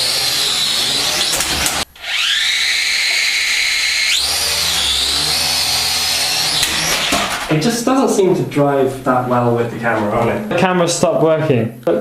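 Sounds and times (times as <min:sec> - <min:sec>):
toy drone motors whining: 0:00.0 - 0:07.4.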